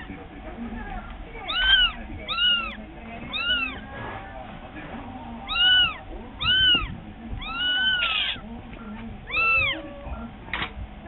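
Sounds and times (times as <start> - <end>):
kitten meowing: 1.4 - 3.8, 5.5 - 8.4, 9.3 - 10.2.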